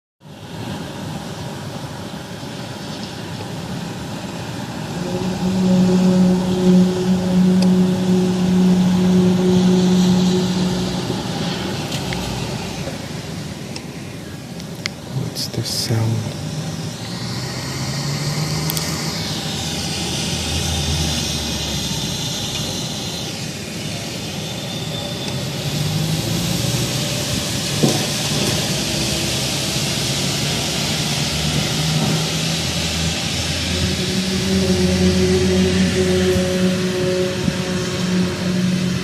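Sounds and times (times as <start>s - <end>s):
low droning hum: 3.5s - 23.9s, 25.5s - 39.0s
hiss: 16.3s - 39.0s.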